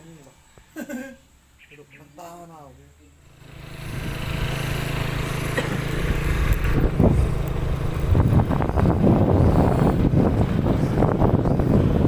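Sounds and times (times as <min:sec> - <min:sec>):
engine running steadily: 0:03.2 - 0:12.0
wind buffeting microphone: 0:06.0 - 0:12.0.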